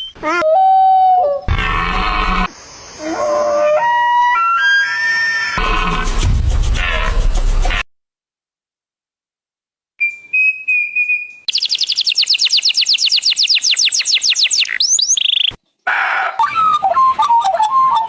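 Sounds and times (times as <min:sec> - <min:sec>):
songbird singing: 0:10.0 - 0:18.0.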